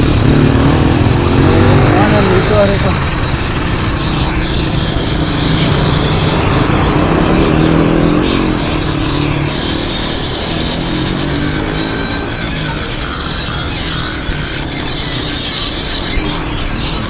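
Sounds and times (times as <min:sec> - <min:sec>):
road and wind noise: 0:00.0 - 0:17.0
vehicle engines passing: 0:00.0 - 0:17.0.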